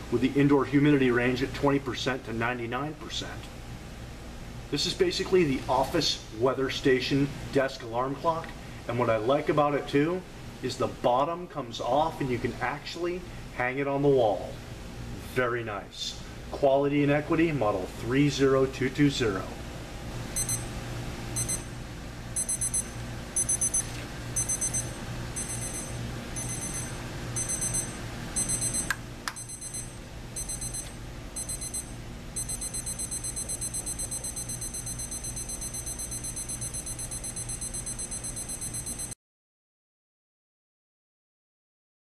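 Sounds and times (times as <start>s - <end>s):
alarm clock beeping: 20.4s - 20.7s, 21.4s - 21.7s, 22.4s - 39.2s.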